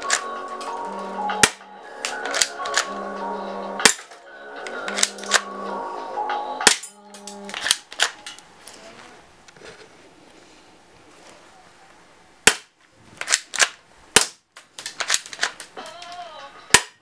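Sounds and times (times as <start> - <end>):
background music: 0.0 - 9.4, 15.6 - 17.0
airsoft pistol firing: 1.4 - 1.7, 3.8 - 4.2, 6.6 - 7.0, 12.4 - 15.6.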